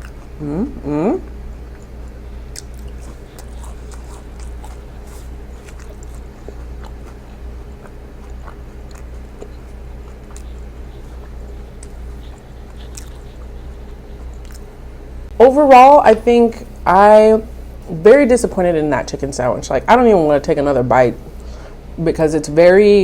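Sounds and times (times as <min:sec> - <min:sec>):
person chewing food: 0:00.0 - 0:00.5, 0:01.2 - 0:15.2
steady low hum: 0:00.0 - 0:23.0
mouth clicks and smacks: 0:02.5 - 0:04.5, 0:07.8 - 0:14.7.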